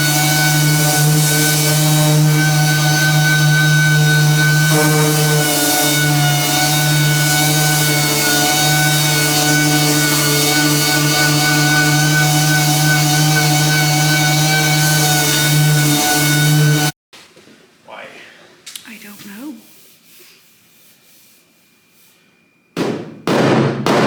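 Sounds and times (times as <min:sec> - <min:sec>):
machine drone with whining tones: 0:00.0 - 0:16.9.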